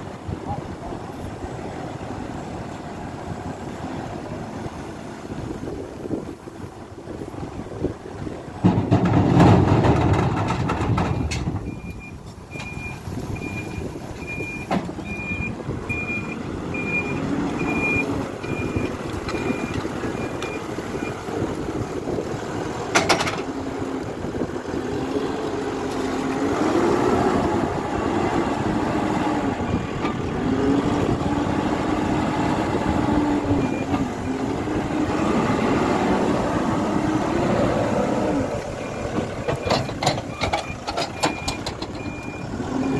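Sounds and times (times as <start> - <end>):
diesel engine under load: 0.0 - 42.9
reversing alarm beeping: 11.1 - 21.2, 38.8 - 42.9.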